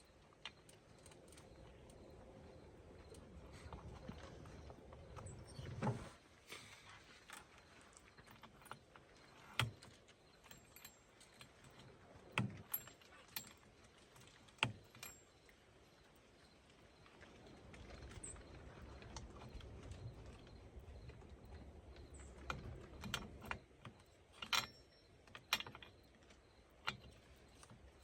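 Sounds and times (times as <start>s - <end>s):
tools clinking and knocking: 22.5s - 26.1s.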